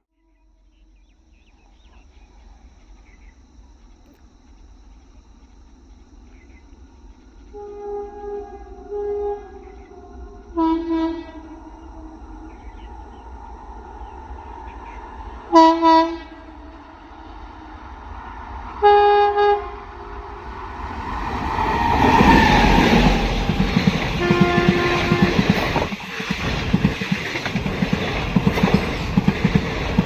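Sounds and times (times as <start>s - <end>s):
rumble and rattle of moving train: 6.3s - 30.0s
locomotive air horn blasts: 7.5s - 12.2s, 15.5s - 16.8s, 18.8s - 20.6s, 22.0s - 25.6s.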